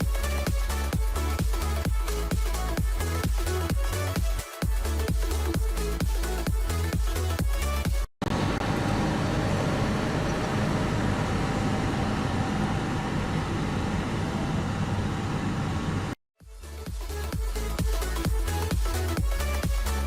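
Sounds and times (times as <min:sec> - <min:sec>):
electronic dance music: 0:00.0 - 0:08.1, 0:16.4 - 0:20.0
motor vehicle running: 0:08.2 - 0:16.2.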